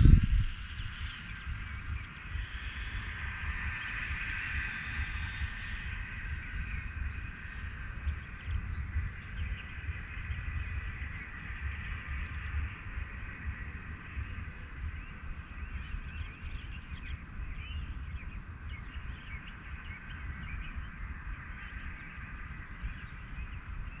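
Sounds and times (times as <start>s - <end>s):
low rumble: 0.0s - 24.0s.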